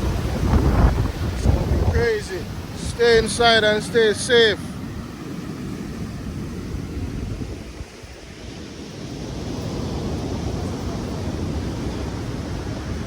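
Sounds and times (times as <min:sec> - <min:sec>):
sea surf rushing: 0:00.0 - 0:13.0
wind buffeting microphone: 0:00.0 - 0:13.0.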